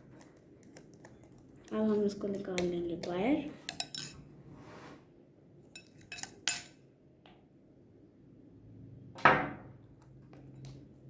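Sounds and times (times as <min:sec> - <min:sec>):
spoon scraping a bowl: 0:03.6 - 0:05.0, 0:05.7 - 0:06.7.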